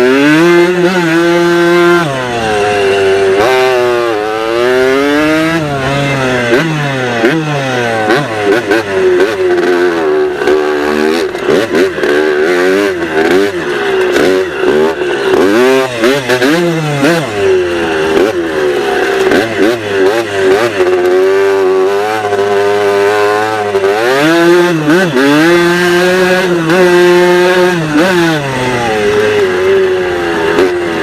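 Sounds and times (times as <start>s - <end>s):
dirt bike engine revving: 0.0s - 31.0s.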